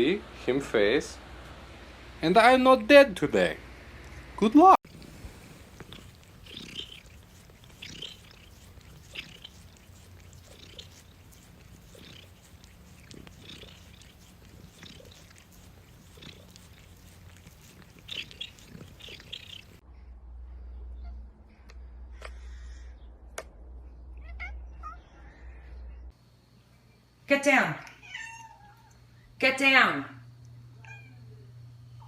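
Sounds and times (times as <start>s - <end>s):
low steady hum: 0.0s - 32.0s
faint soft cat sounds: 5.0s - 19.8s.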